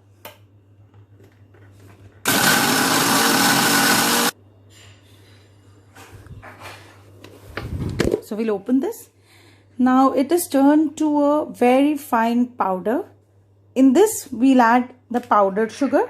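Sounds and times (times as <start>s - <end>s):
electric mixer grinder blending: 2.3s - 4.4s.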